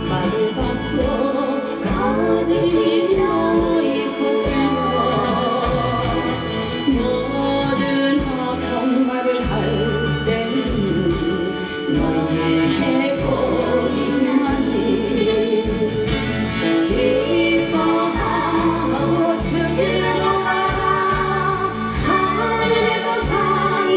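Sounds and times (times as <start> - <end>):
gospel singing: 0.0 - 23.9
instrumental accompaniment with bass: 0.0 - 23.9.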